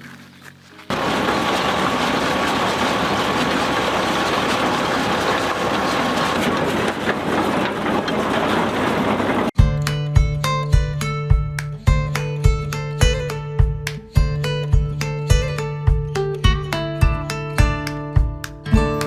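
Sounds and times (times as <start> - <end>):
tractor engine running: 0.9 - 9.6.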